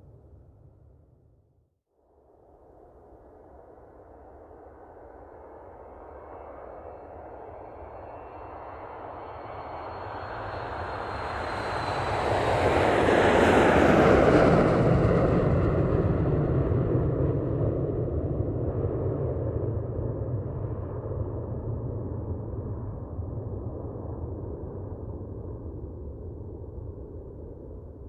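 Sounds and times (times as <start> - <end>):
jet airplane flying past: 4.6 - 27.8.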